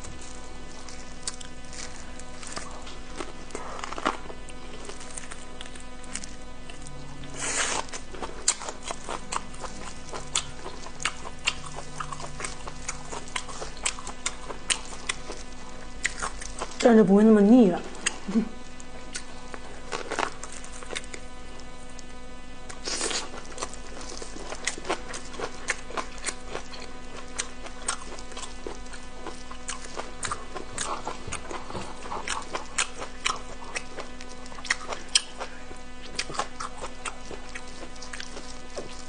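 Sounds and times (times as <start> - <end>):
close-miked wet chewing: 0.0 - 16.8, 22.7 - 39.0
crisp crunches: 0.0 - 16.8, 18.0 - 22.1, 22.7 - 39.0.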